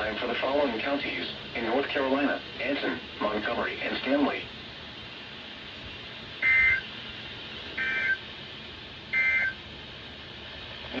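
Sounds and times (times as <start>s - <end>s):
broadcast hiss: 0.0s - 11.0s
harsh digital chirps: 9.2s - 9.6s.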